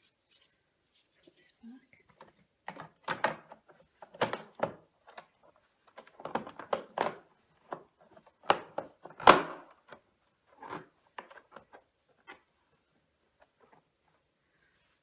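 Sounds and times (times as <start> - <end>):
vacuum cleaner parts knocking: 5.9 - 10.0.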